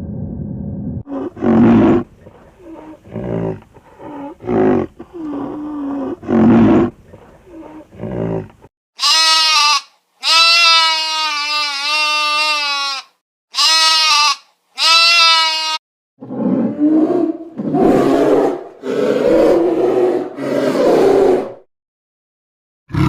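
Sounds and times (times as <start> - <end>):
big cat roaring: 1.1 - 8.7, 16.2 - 21.6
rasping breaths: 2.0 - 6.2
animal bleating: 9.0 - 15.8.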